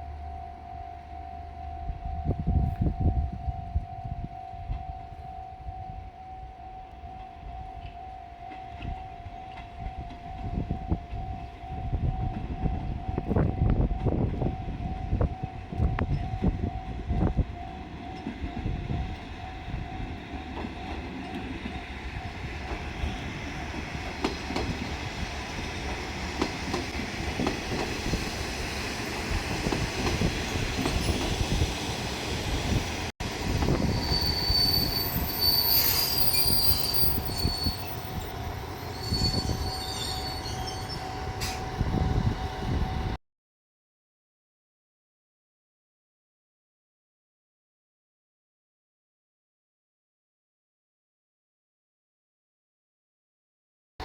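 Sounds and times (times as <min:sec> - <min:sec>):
level crossing alarm: 0:00.0 - 0:24.3
diesel railcar rumbling on track: 0:00.0 - 0:43.2
train wheels squealing: 0:33.7 - 0:41.8.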